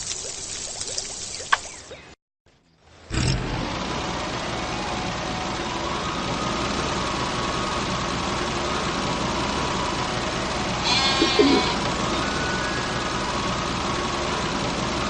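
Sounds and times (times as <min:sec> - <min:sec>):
vehicle engine rumbling: 0:00.7 - 0:15.0
faint high hum: 0:10.9 - 0:13.3.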